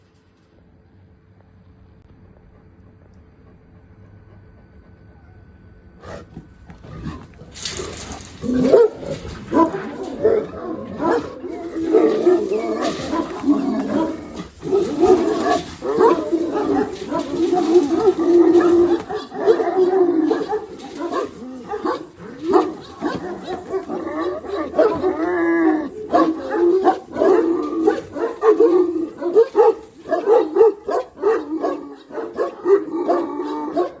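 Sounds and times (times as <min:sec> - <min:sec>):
dog whining: 0:04.9 - 0:06.2, 0:06.9 - 0:29.4
dogs barking: 0:06.0 - 0:34.0.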